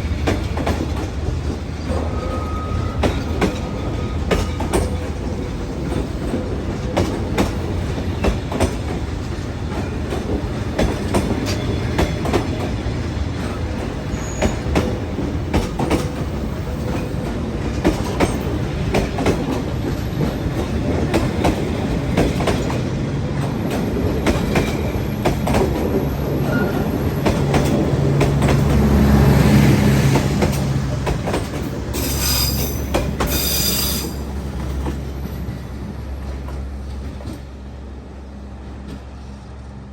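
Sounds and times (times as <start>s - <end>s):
train wheels clicking over rail joints: 0.0s - 37.6s
low train rumble: 0.0s - 39.9s
high wheel squeal: 1.8s - 4.4s, 14.1s - 14.8s, 26.1s - 27.2s, 31.9s - 34.3s.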